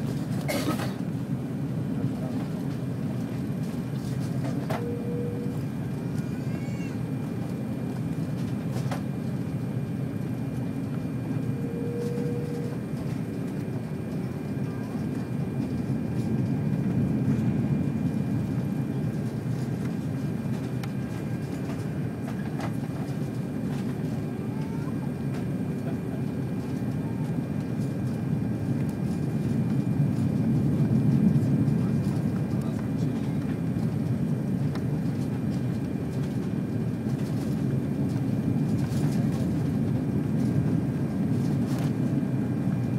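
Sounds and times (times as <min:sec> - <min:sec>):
airliner engines rumbling in cabin: 0:00.0 - 0:42.9
faint tone: 0:04.7 - 0:05.6, 0:11.6 - 0:12.8.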